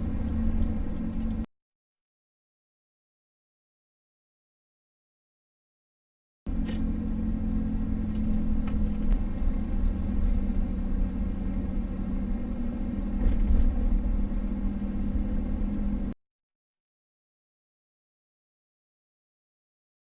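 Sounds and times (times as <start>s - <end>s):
vehicle engine humming: 0.0s - 1.5s, 6.5s - 16.2s.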